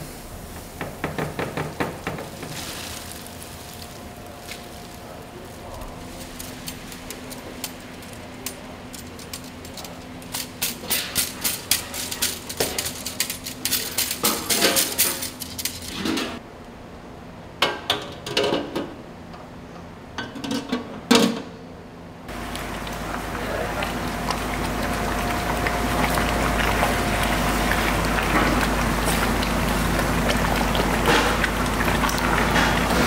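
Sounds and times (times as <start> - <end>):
hard objects clinking and clattering: 5.8 - 16.4.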